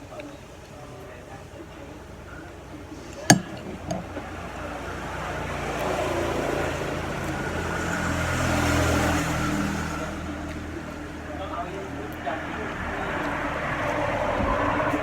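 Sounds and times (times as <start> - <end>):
motor vehicle passing by: 3.4 - 15.0.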